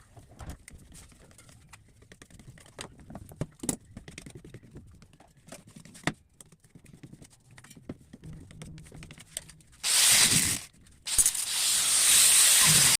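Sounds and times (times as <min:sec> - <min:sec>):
rushing strokes of woodworking tool: 0:09.8 - 0:13.0.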